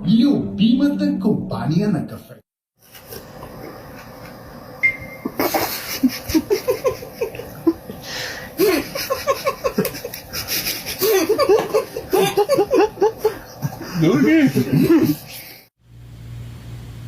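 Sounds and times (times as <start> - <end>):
person laughing: 5.3 - 15.6.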